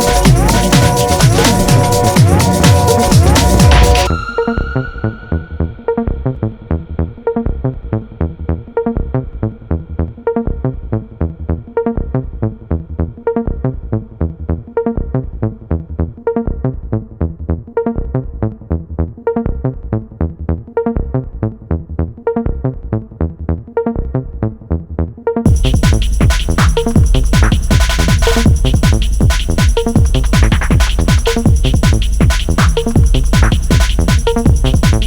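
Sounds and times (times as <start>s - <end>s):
electronic music with pulsing beat: 0.0s - 9.0s, 25.5s - 35.0s.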